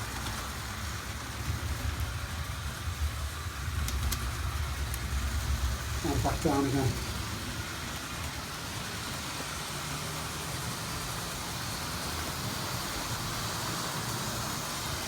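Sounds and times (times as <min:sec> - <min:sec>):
model train running on track: 0:00.0 - 0:15.0.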